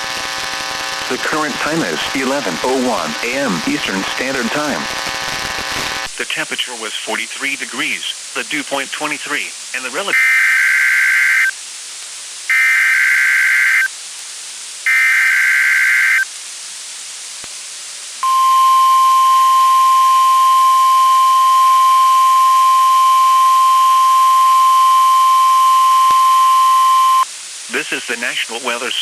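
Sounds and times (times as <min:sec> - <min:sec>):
hiss: 0:13.7 - 0:15.0, 0:16.2 - 0:18.2, 0:27.2 - 0:29.0
digital data buzzing warble: 0:18.2 - 0:27.2
steady warning alarm tone: 0:18.2 - 0:27.2.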